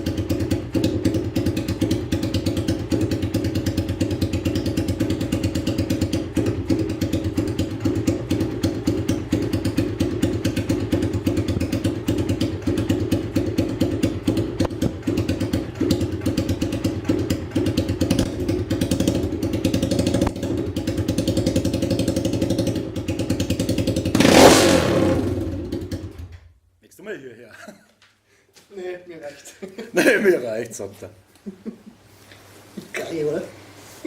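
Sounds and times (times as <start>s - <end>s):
engine revving: 0.0s - 26.4s
motorcycle engine pulsing: 0.0s - 26.4s.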